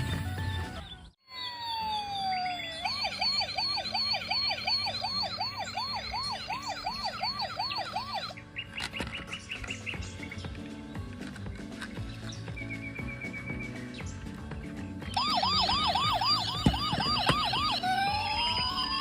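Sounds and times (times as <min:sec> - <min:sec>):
toy electronic siren wail: 0:01.2 - 0:08.4, 0:15.1 - 0:19.0
electronic chirps: 0:01.3 - 0:08.3.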